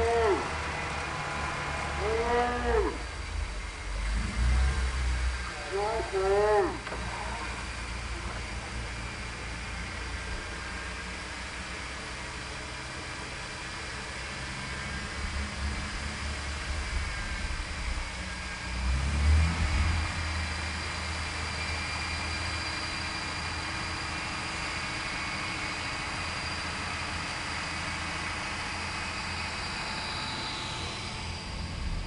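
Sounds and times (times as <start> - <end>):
vehicle engine running: 0.0 - 32.0
faint high whine: 14.2 - 32.0.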